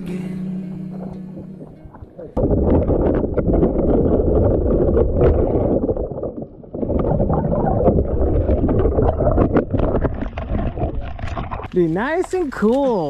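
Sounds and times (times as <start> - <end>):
wind buffeting microphone: 2.0 - 11.7.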